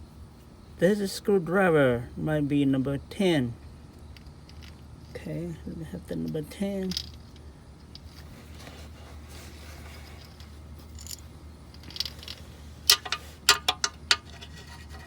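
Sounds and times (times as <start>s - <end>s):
metal tools clinking: 6.2s - 15.0s.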